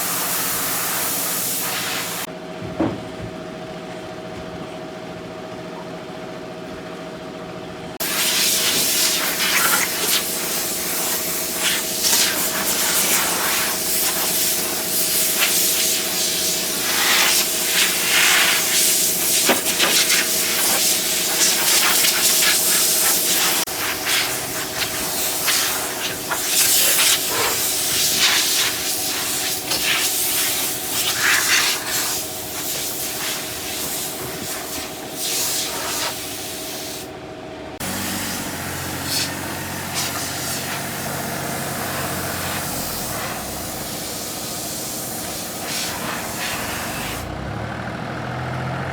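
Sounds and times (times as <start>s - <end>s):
loud rough hiss: 0.0s - 2.3s, 8.0s - 37.0s
machine hum: 37.8s - 45.6s.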